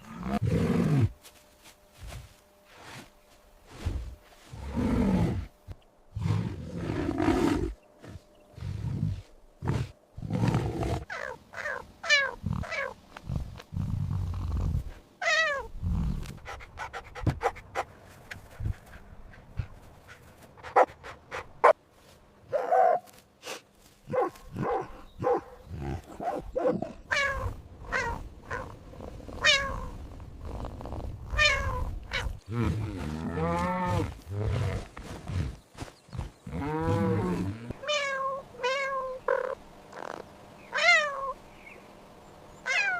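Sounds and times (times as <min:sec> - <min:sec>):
cat calling: 0:26.8 - 0:28.7, 0:29.4 - 0:30.0, 0:31.3 - 0:32.4, 0:37.8 - 0:41.4, 0:42.6 - 0:42.9.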